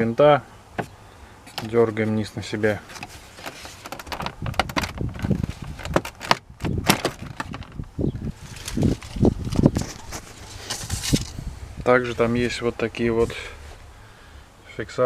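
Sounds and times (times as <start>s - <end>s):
dull knocks of plastic panel: 3.8s - 7.8s.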